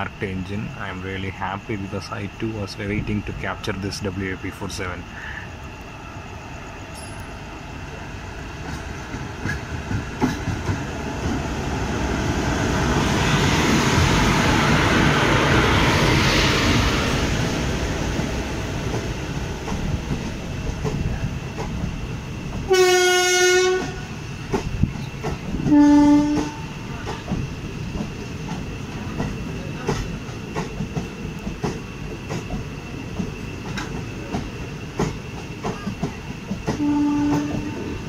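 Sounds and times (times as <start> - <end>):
train rumble and wheel clatter: 0.0 - 38.0
electric locomotive horn blast: 22.7 - 24.1, 25.7 - 26.7, 36.8 - 37.9.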